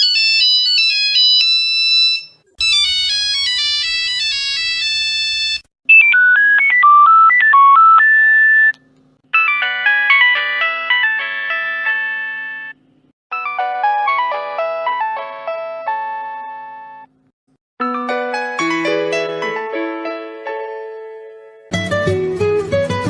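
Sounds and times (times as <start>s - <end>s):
mobile phone ringtones: 4.8s - 8.7s, 9.3s - 14.3s.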